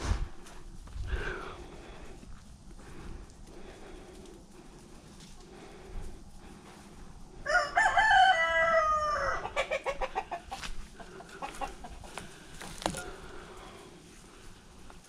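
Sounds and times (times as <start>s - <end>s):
rooster crowing: 7.4s - 10.1s
chickens clucking: 8.8s - 13.7s.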